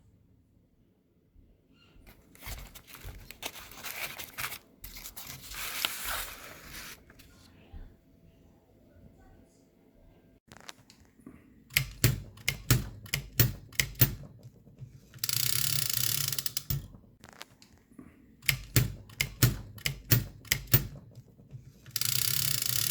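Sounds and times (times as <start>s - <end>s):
typewriter key strikes: 11.7s - 14.6s, 15.2s - 17.0s, 18.4s - 21.3s
typewriter carriage return rasp: 11.7s - 17.1s, 18.4s - 22.9s.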